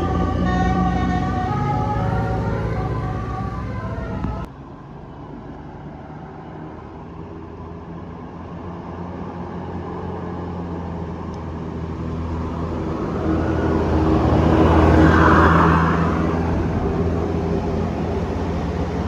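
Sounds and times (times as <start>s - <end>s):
multi-tone bus horn: 0.0s - 4.5s
bus engine running: 0.0s - 19.0s.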